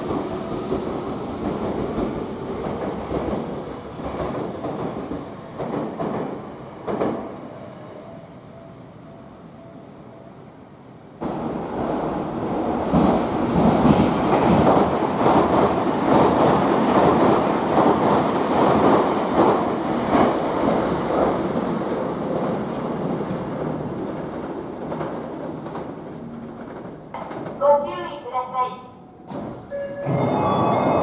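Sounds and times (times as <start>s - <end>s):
electric train wheels clacking: 22.7s - 27.6s, 29.2s - 31.0s.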